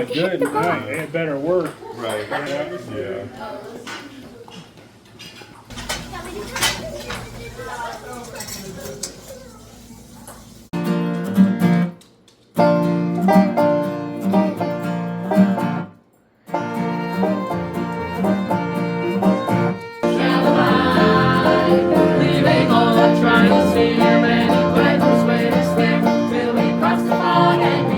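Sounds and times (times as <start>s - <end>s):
plucked string music: 12.6s - 15.8s, 16.5s - 27.9s.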